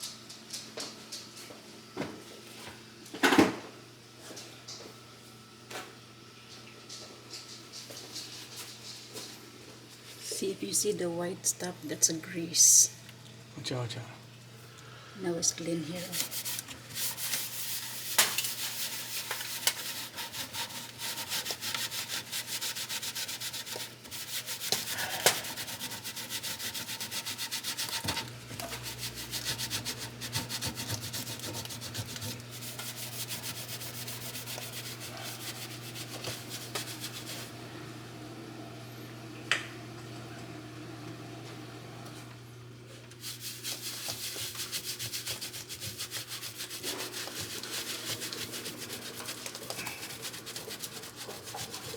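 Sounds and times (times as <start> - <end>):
steady low hum: 7.3 - 22.2
rag scrubbing metal: 15.9 - 37.5, 43.2 - 51.9.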